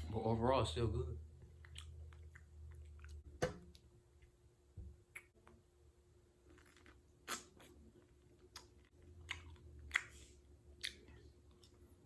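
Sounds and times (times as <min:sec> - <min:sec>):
wet mouth smacks and clicks: 0:09.3 - 0:10.2.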